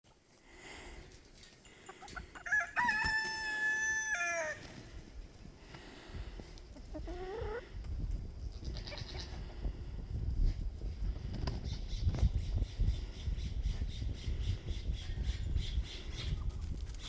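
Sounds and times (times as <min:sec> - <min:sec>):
rooster crowing: 0:02.4 - 0:04.6.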